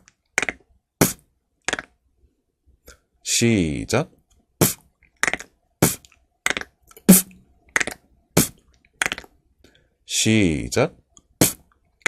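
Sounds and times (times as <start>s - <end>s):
beatboxing kick: 0.0s - 1.2s, 4.6s - 4.8s, 5.8s - 6.1s, 7.0s - 8.6s, 11.4s - 11.6s
beatboxing punch snare: 0.0s - 1.8s, 4.6s - 4.8s, 5.8s - 9.2s, 11.4s - 11.6s.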